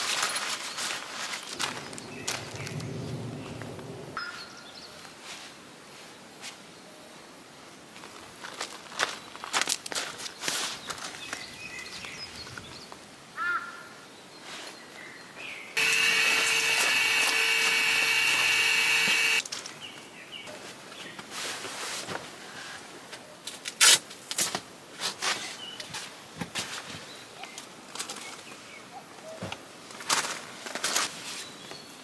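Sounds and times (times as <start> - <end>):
small electric motor whining: 15.8 - 19.4.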